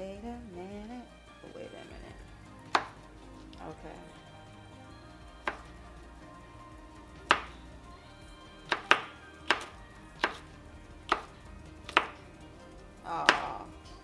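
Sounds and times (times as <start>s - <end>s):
knife chopping on cutting board: 8.7s - 10.4s, 11.1s - 11.3s, 11.9s - 12.2s.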